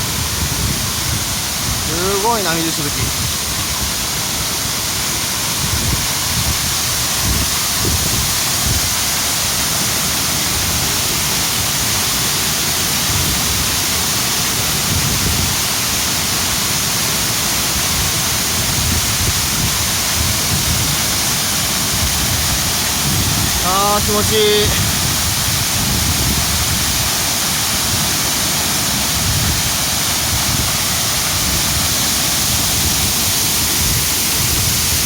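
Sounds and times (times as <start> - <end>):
stream rushing and splashing: 0.0 - 35.0.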